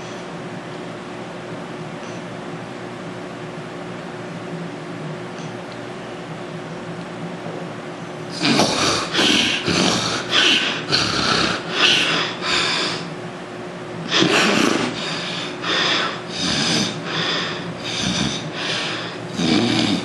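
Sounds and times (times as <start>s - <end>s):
man snoring: 8.3s - 13.1s, 14.1s - 20.0s.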